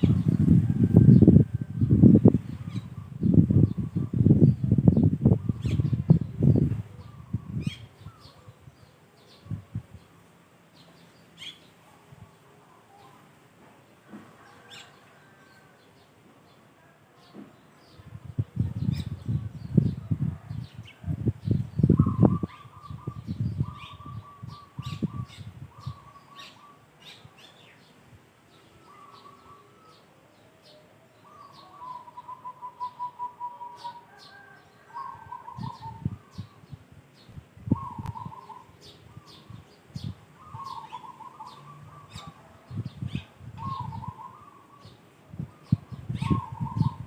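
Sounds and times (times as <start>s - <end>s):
birds trilling: 28.6s - 36.7s, 37.7s - 47.0s.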